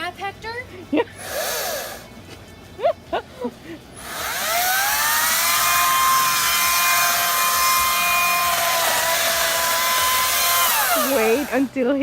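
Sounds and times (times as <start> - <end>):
chainsaw revving: 1.2 - 2.1, 4.0 - 11.8.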